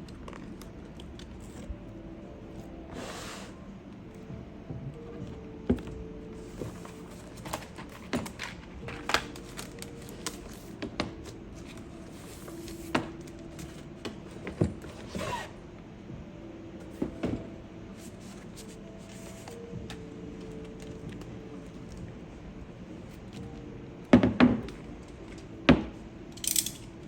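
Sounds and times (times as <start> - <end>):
items clicking on a desk: 6.6 - 11.8.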